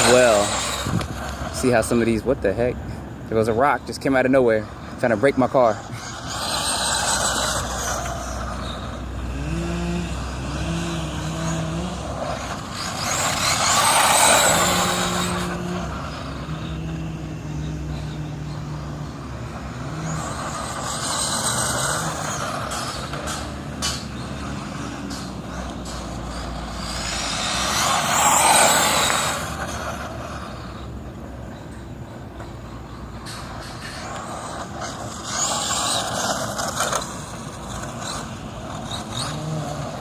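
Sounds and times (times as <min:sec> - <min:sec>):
electric motor whining: 0:05.8 - 0:30.9.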